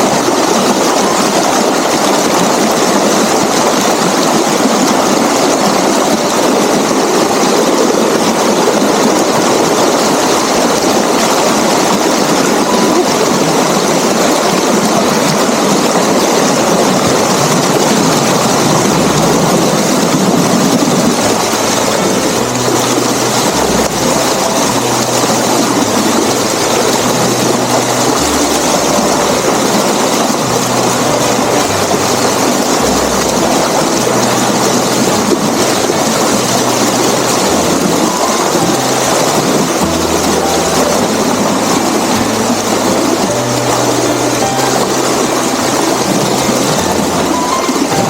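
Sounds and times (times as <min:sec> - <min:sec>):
water rushing over dam: 0:00.0 - 0:48.0.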